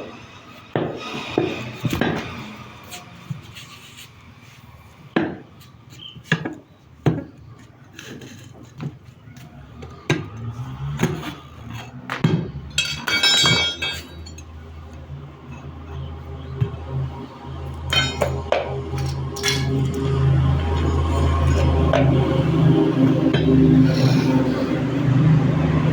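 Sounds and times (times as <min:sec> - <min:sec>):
hard objects clinking and knocking: 0:10.2 - 0:14.5, 0:17.9 - 0:20.1
ringing metallic clatter: 0:12.7 - 0:14.5, 0:17.9 - 0:22.1.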